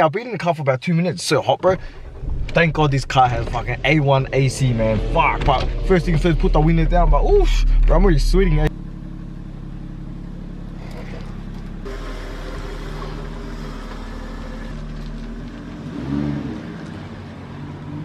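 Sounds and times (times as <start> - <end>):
car engine hum: 1.6 - 18.0
person speaking: 2.5 - 8.7.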